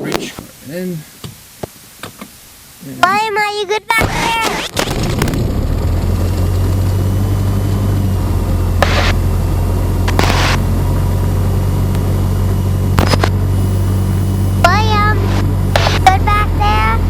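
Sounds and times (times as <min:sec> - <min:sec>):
piston engine idling: 0:04.9 - 0:17.0.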